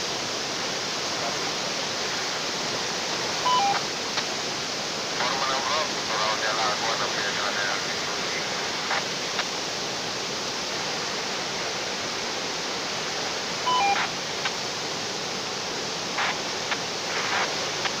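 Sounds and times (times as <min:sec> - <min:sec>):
electronic beep: 0:03.5 - 0:03.8, 0:13.7 - 0:14.1.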